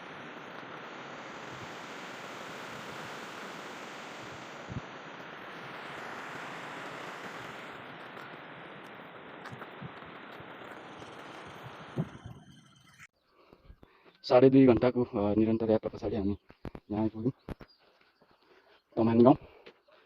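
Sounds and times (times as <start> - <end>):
steady rushing noise: 0.0 - 13.1.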